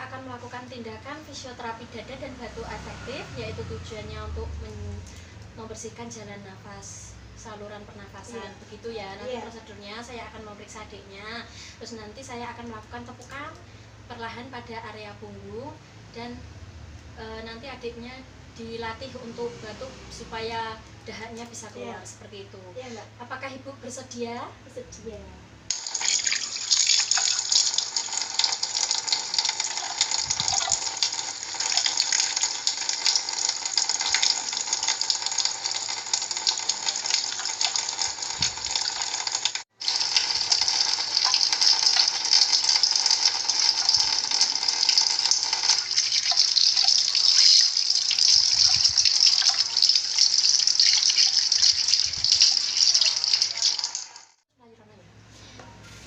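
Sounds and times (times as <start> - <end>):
tap water running into sink: 25.7 - 54.3.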